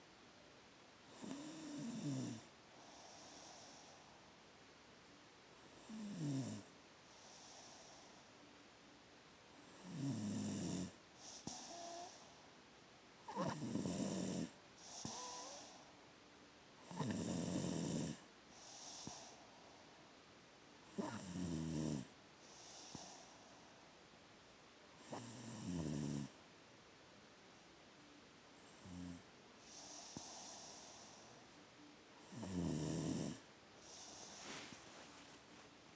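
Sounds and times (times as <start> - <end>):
soft breath out: 33.8 - 35.8.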